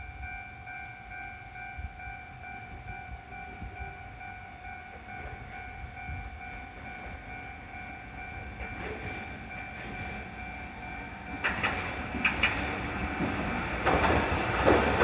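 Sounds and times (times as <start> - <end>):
level-crossing alarm ringing: 0.0 - 15.0
train wheels clacking on rail joints: 6.7 - 15.0.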